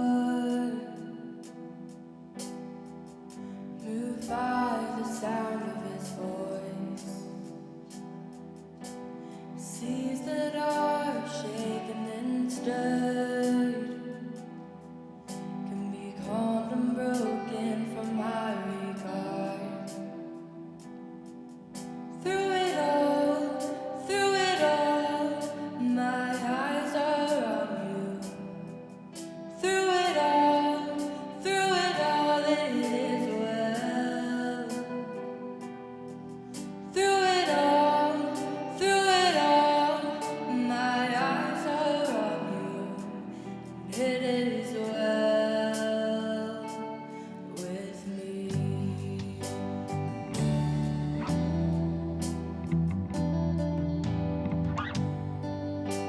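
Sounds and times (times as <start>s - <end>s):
person singing worship song: 0.0s - 2.6s, 3.3s - 21.1s, 21.7s - 52.6s
instrumental accompaniment: 48.6s - 56.0s.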